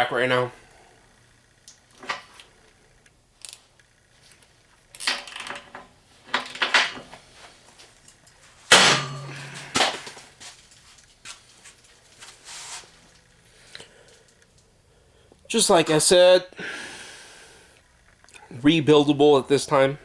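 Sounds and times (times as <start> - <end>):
ratchet cracking and clanking: 4.8 - 7.0
sharp metallic bang with ringing: 8.7 - 10.0.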